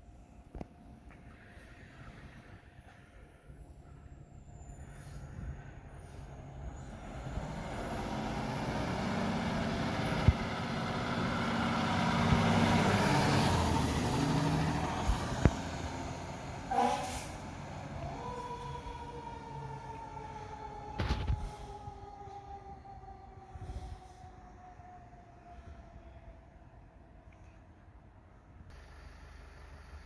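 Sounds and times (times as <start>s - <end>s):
fire truck driving past: 3.9s - 27.3s.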